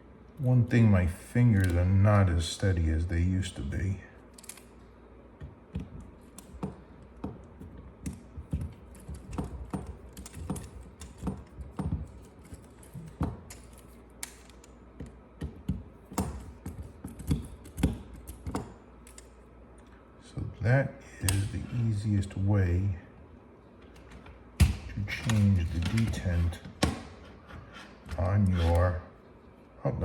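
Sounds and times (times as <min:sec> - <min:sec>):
knocks of parts: 0:05.4 - 0:19.3, 0:23.8 - 0:27.3.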